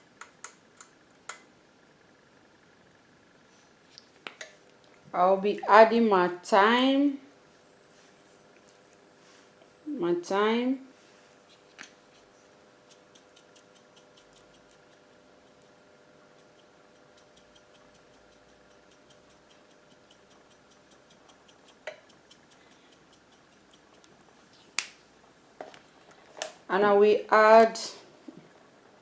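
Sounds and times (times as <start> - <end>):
low steady hum: 0.0 - 29.0
faint even ticking: 16.4 - 24.2.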